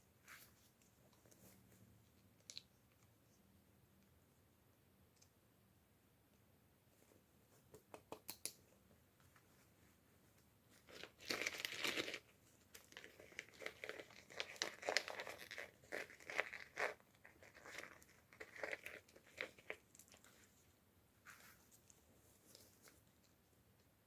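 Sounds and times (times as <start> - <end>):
packaging crinkling and tearing: 10.8 - 19.8.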